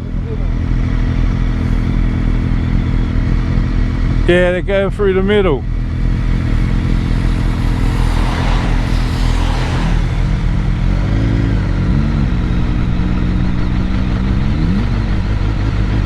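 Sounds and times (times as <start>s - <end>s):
brief rushing noise: 6.5s - 14.3s.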